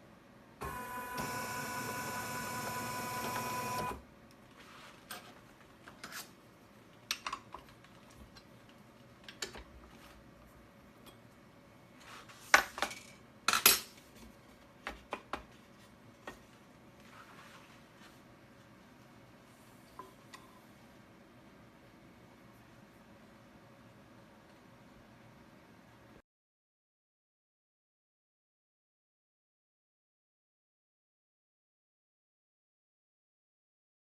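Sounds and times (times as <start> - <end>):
machine whine: 0.6 - 4.0.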